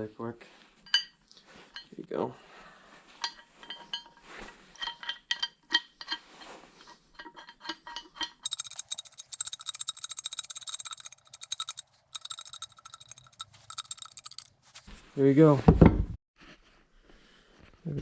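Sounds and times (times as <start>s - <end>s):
pipe wrench parts clinking: 3.2s - 6.2s, 6.8s - 14.9s
fast ringing metallic clicks: 8.4s - 14.8s.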